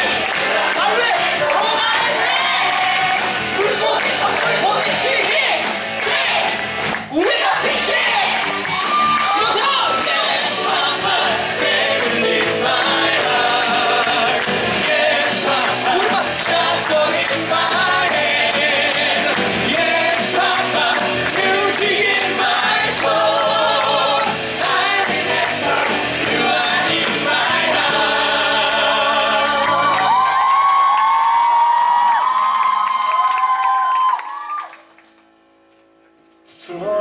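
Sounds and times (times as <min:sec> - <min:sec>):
voices singing together: 0:00.0 - 0:08.7, 0:09.3 - 0:30.5.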